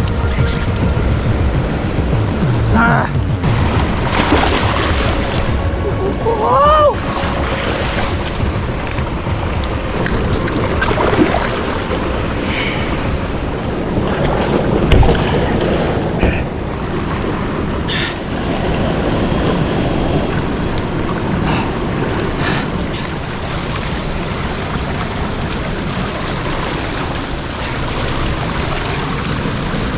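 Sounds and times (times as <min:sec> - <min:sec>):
rushing water current: 0:00.0 - 0:29.9.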